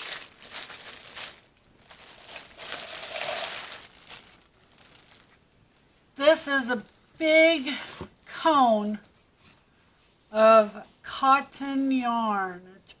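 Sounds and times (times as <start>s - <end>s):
packaging rustling: 0.0s - 5.5s.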